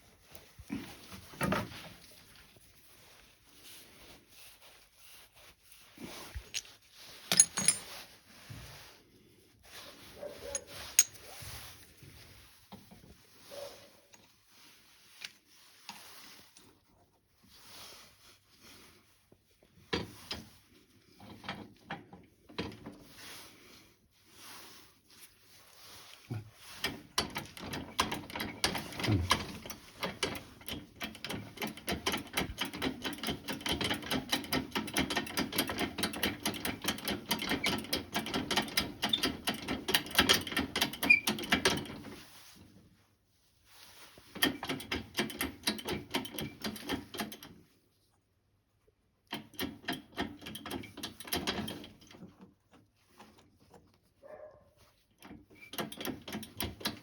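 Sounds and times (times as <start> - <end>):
hand tool clicking and scratching: 6.2 - 8.0, 26.8 - 42.2, 49.2 - 52.4, 55.2 - 57.0.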